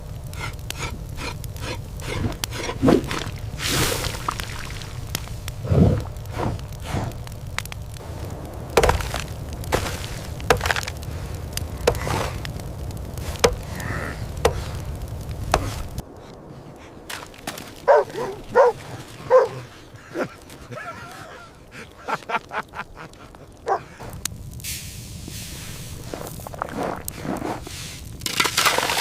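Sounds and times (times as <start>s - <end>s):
steady low rumble: 0.0s - 28.3s
chopping strikes: 8.8s - 10.9s, 11.8s - 12.4s, 13.3s - 13.8s, 15.5s - 15.9s
dog barking: 17.8s - 19.7s, 23.6s - 23.9s.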